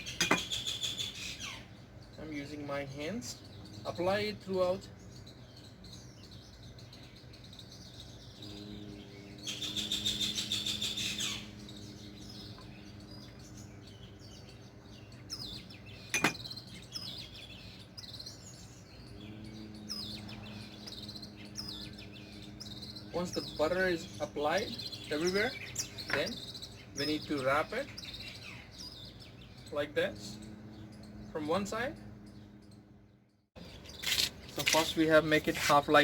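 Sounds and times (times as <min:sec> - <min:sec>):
birds chirping: 0:00.0 - 0:36.0
faint low hum: 0:01.8 - 0:28.2.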